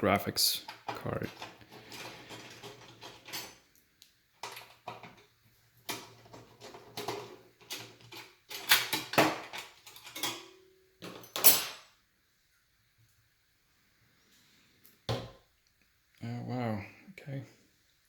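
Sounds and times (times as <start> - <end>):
metal parts clicking and clinking: 0.6 - 3.6, 4.4 - 5.2, 5.9 - 11.9.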